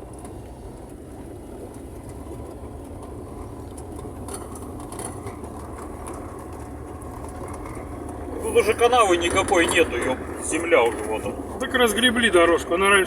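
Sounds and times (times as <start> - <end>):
car engine running: 0.0 - 13.0
road noise inside car: 0.0 - 13.0.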